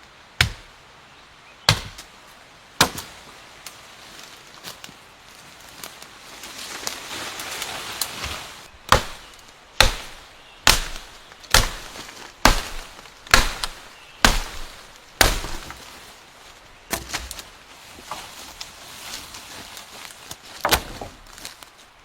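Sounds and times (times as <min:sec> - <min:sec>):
sharp chopping tool strikes: 0:08.9 - 0:15.8.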